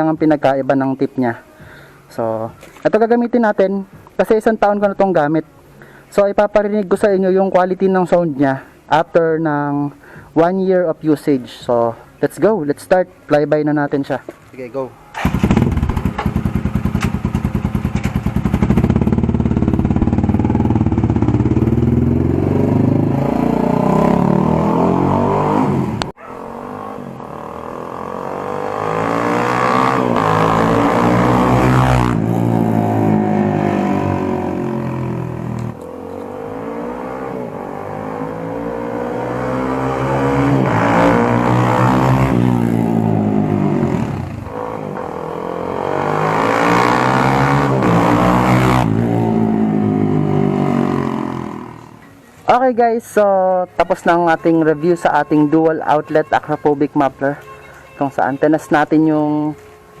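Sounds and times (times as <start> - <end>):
motorcycle accelerating past: 15.2 - 52.0.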